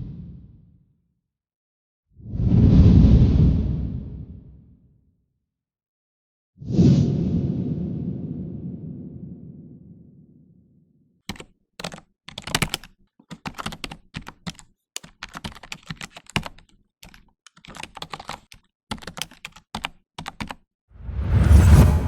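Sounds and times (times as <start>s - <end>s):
typing on computer keyboard: 11.3s - 20.6s
loud whoosh with deep rumble: 21.0s - 22.0s.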